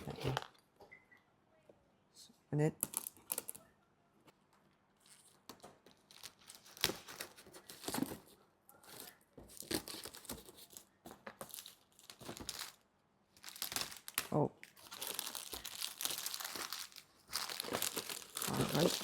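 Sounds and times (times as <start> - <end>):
packaging rustling and ripping: 5.1 - 8.3, 8.9 - 12.8, 13.4 - 19.0
sharp tear of packaging: 14.8 - 19.0.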